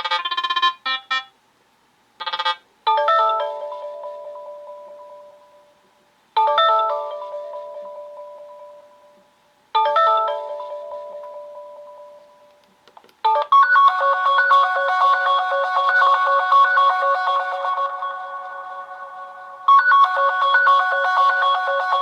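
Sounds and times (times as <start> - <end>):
ringtone melody: 0.0 - 1.3, 2.2 - 5.8, 6.4 - 9.2, 9.8 - 12.5, 13.3 - 22.0
chime-like ringtone: 2.9 - 5.7, 6.4 - 9.2, 9.8 - 12.4, 13.3 - 22.0.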